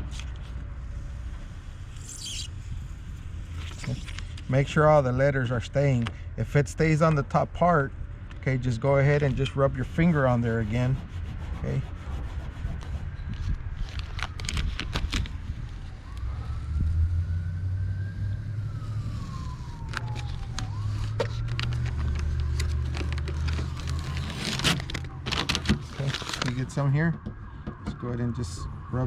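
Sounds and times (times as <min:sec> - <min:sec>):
distant siren wailing: 0:09.0 - 0:29.0.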